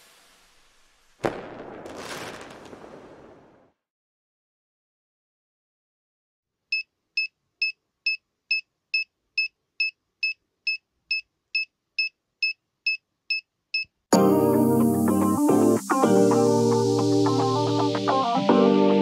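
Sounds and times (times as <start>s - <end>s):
loud music: 14.2s - 19.0s.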